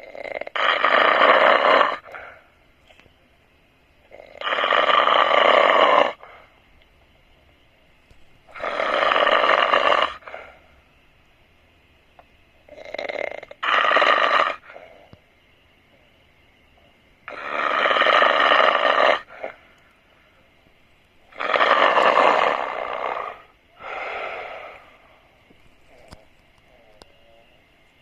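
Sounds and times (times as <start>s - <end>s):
person snoring loudly: 0.0s - 2.2s, 4.1s - 6.2s, 8.5s - 10.4s, 21.3s - 24.9s.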